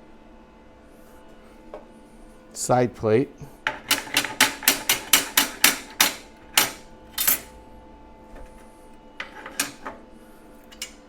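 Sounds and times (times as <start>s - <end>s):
metal plates clinking: 3.8s - 7.5s.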